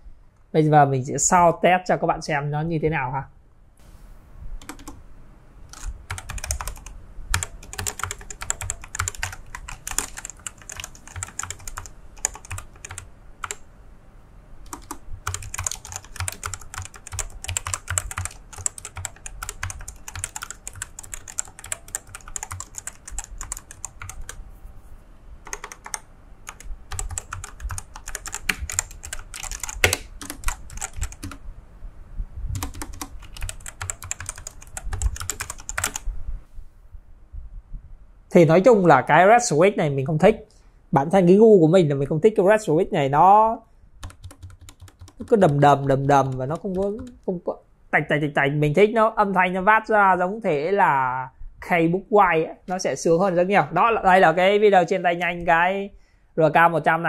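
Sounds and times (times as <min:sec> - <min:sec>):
fast typing on mechanical keyboard: 0:04.6 - 0:05.0, 0:05.7 - 0:13.6, 0:14.7 - 0:24.4, 0:25.4 - 0:31.4, 0:32.6 - 0:36.0, 0:44.0 - 0:47.2.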